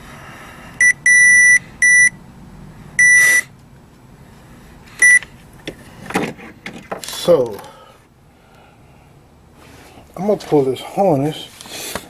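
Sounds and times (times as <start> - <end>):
high-pitched receiver beeps: 0.8 - 2.1, 3.0 - 3.2, 5.0 - 5.2.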